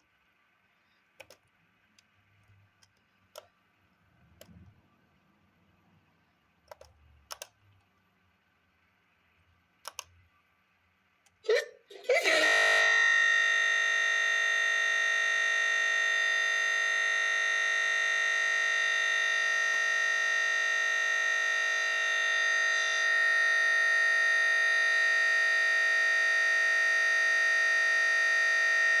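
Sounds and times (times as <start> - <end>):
electronic buzzing drone: 12.1 - 29.0.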